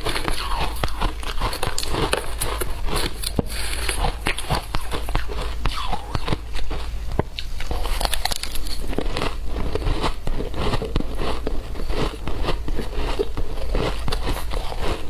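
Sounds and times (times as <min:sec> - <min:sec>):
ice crunching while chewed: 0:00.0 - 0:15.0
steady low hum: 0:00.0 - 0:15.0.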